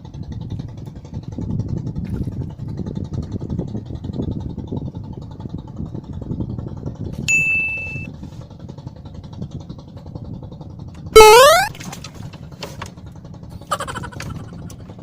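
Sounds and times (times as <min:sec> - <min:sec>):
bright ding: 0:07.3 - 0:08.1.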